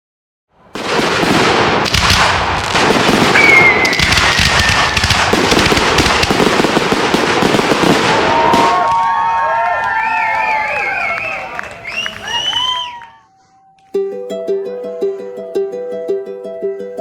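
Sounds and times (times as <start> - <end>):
fireworks crackling and popping: 0.7 - 12.8.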